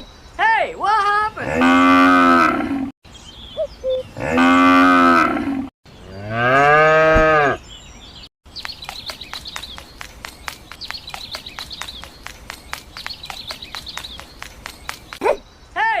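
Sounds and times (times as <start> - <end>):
cow mooing: 1.4 - 2.9, 4.2 - 7.6.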